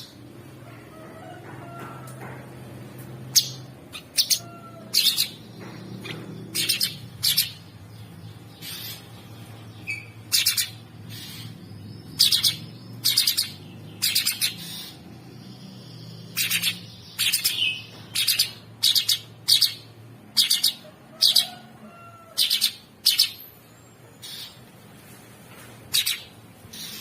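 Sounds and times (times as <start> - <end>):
bird harsh scratchy calls: 3.4 - 7.6, 8.6 - 9.2, 9.9 - 11.6, 12.2 - 15.0, 24.2 - 24.7, 25.8 - 27.0.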